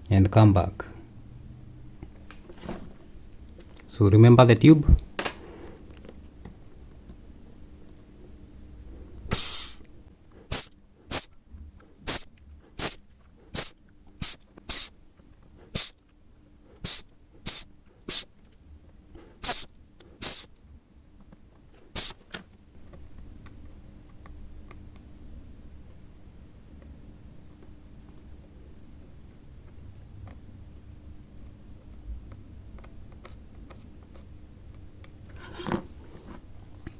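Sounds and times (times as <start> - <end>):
short hissing puffs of air: 9.3 - 11.3, 12.0 - 14.9, 15.7 - 16.0, 16.8 - 18.3, 19.4 - 20.5, 21.9 - 22.2.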